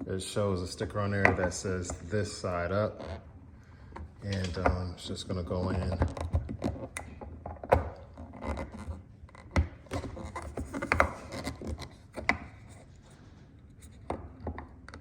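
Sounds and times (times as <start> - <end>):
plastic rubbing and scraping: 4.2 - 15.0.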